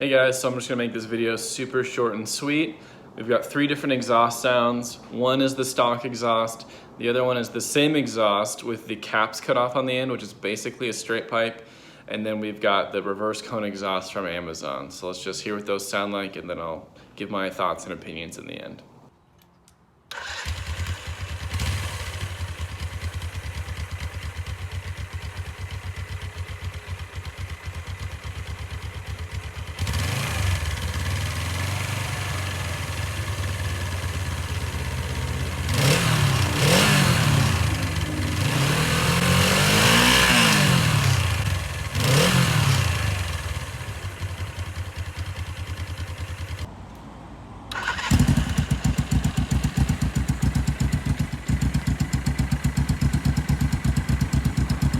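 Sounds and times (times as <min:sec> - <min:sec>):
motorcycle engine revving: 0:20.1 - 0:46.7, 0:47.7 - 0:54.9
loud engine idling: 0:25.1 - 0:46.7, 0:47.9 - 0:54.9.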